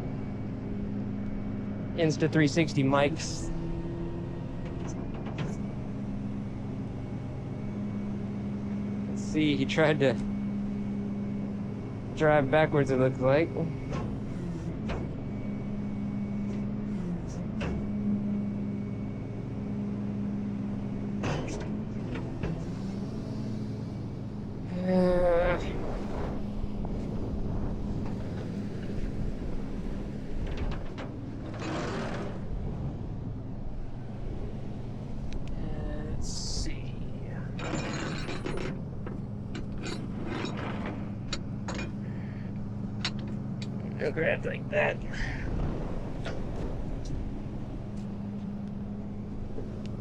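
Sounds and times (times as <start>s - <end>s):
truck engine idling: 0.0s - 50.0s
wind on microphone: 24.8s - 30.9s
metal rigging rattling: 37.4s - 50.0s.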